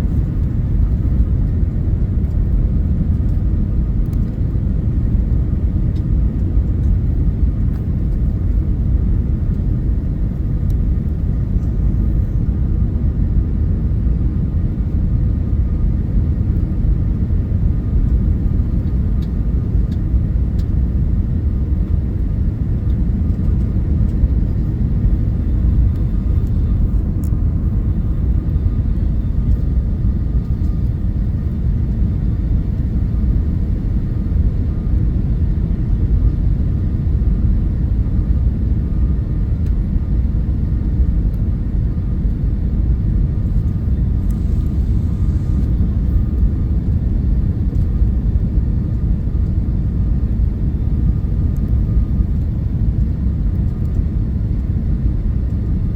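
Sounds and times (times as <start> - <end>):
jet engine rumble: 0.0 - 55.9
thin steady whine: 16.5 - 35.1, 43.2 - 54.8.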